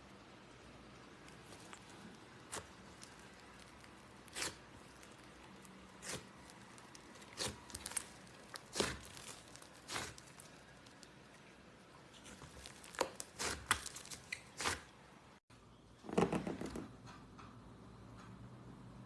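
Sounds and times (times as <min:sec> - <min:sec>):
slime crackling and popping: 0:01.2 - 0:11.3, 0:12.3 - 0:14.8.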